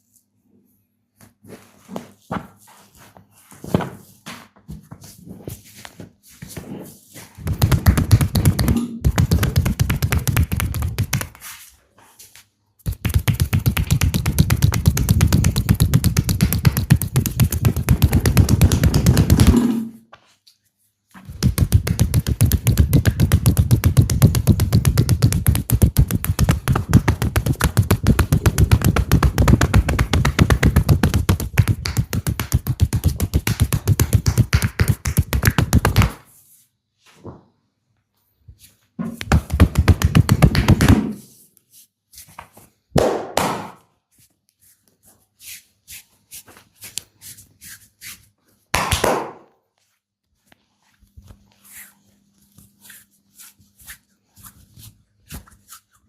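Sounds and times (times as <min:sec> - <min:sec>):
hands tapping on body: 0:07.4 - 0:11.4, 0:12.9 - 0:19.6, 0:21.3 - 0:36.2, 0:39.2 - 0:41.2.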